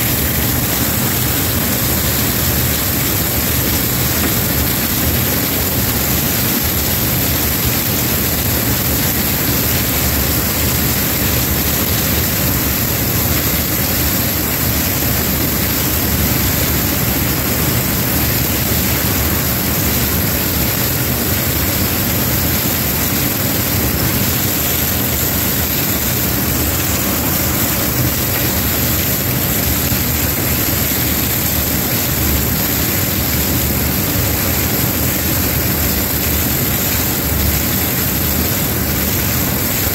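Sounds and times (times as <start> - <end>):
combine harvester running: 23.5 - 30.9.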